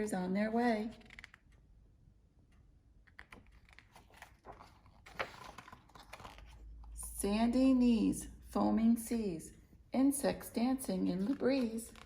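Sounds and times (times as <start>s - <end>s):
book pages rustling: 0.9s - 1.6s, 3.1s - 7.1s, 10.9s - 12.0s.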